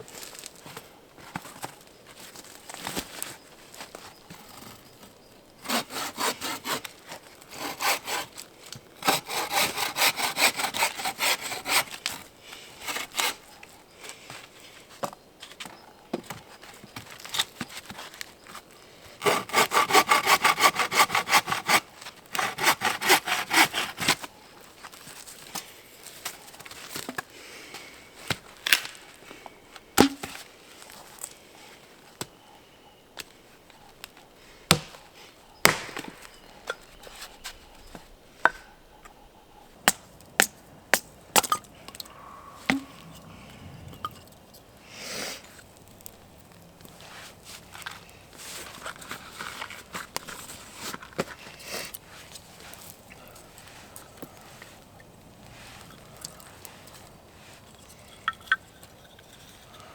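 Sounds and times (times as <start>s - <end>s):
hand saw cutting wood: 5.6s - 8.4s, 9.0s - 13.4s, 19.2s - 24.3s.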